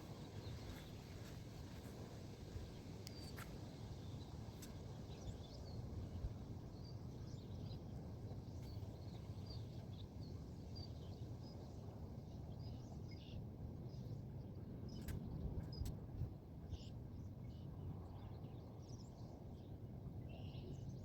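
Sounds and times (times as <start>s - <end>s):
small birds chirping: 0.0s - 11.6s
wind rumble on microphone: 0.0s - 21.0s.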